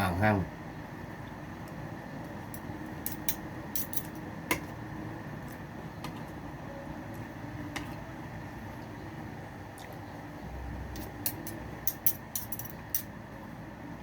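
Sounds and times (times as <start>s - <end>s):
low background noise: 0.0s - 14.0s
utensils clinking: 3.0s - 4.2s, 10.9s - 13.1s.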